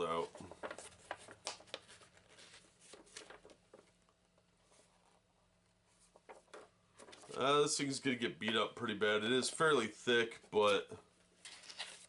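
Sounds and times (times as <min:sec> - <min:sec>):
paper rustling: 0:00.0 - 0:05.2, 0:05.9 - 0:07.7, 0:11.4 - 0:12.0.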